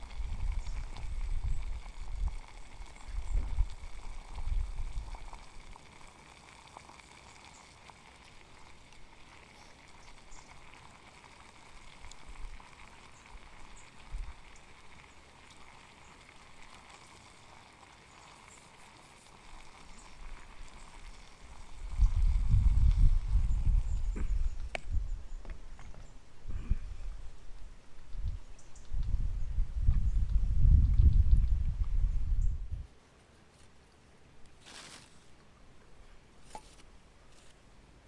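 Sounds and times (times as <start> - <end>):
faint steady hiss: 0.0 - 38.0
wind buffeting microphone: 21.8 - 27.3, 28.0 - 32.9
light crackles: 33.1 - 37.7.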